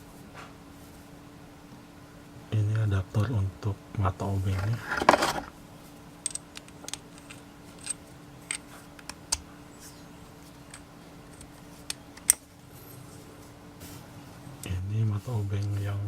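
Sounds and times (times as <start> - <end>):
faint steady hum: 0.0 - 16.0
metal tool bits clicking: 6.2 - 9.2.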